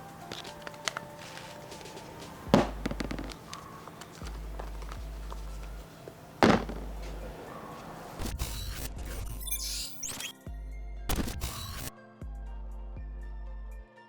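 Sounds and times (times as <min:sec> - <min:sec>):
heavy thud: 0:06.4 - 0:07.4.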